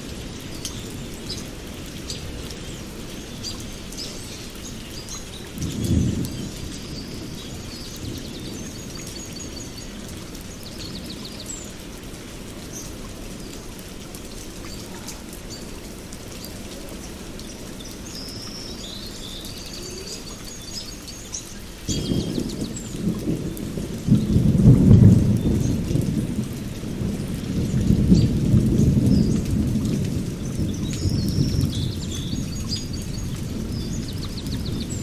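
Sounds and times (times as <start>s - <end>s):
rain: 0.0s - 35.0s
birds chirping: 0.4s - 11.8s, 14.3s - 26.2s
thunder rolling: 5.4s - 8.9s, 21.9s - 35.0s.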